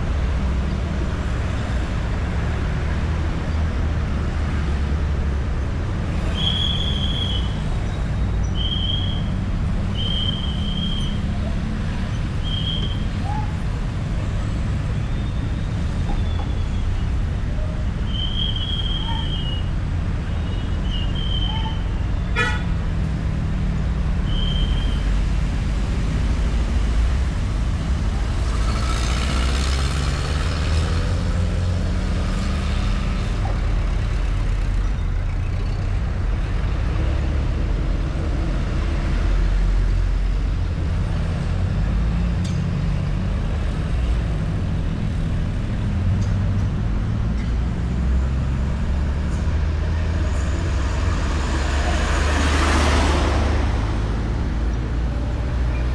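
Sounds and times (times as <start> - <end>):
road traffic passing: 0.0 - 55.9
car horn beep: 21.4 - 22.7
vehicle passing close by: 24.9 - 34.8, 47.8 - 55.7.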